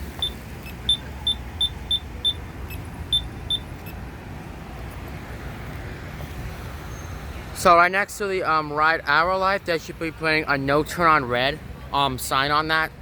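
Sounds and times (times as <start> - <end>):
low rumble of traffic: 0.0 - 13.0
high-pitched signal beeps: 0.2 - 4.0.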